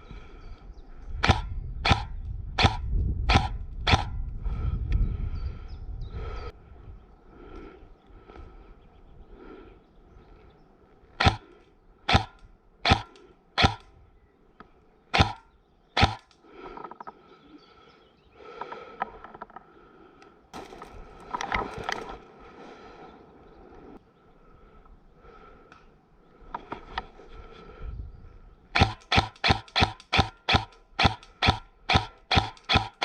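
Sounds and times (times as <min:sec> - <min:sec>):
airsoft rifle shots: 0:01.2 - 0:04.2, 0:11.2 - 0:11.5, 0:12.1 - 0:13.9, 0:15.1 - 0:16.4, 0:28.8 - 0:33.0.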